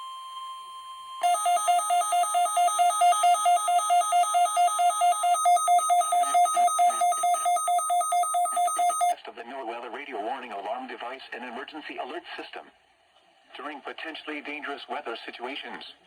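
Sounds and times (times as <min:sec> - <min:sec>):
weather radio two-tone alarm warble: 0:01.2 - 0:09.2.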